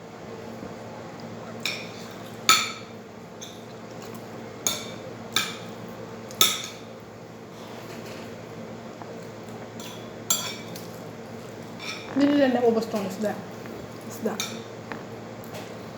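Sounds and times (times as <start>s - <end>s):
steady low hum: 0.0s - 15.9s
cutlery clinking against a plate: 1.6s - 7.0s, 9.8s - 11.0s, 11.7s - 12.2s, 14.4s - 14.8s.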